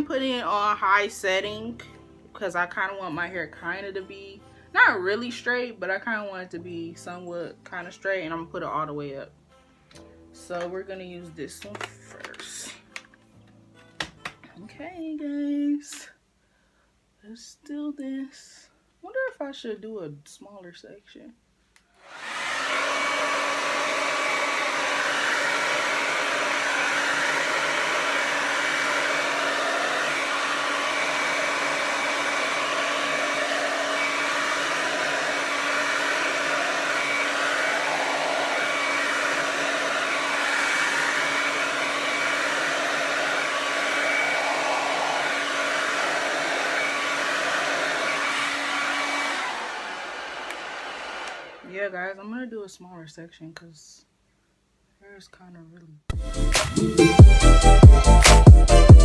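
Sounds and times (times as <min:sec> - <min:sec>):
hair dryer blowing air: 0:22.0 - 0:51.7, 0:56.6 - 0:59.0.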